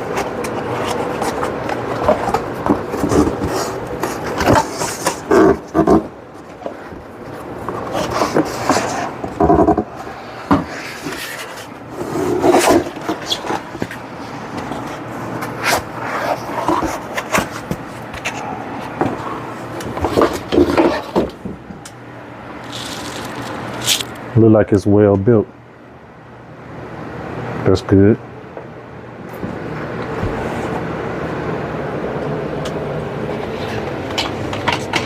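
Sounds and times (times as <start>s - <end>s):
cardboard and packing rustling: 0.0s - 21.7s, 22.6s - 24.2s.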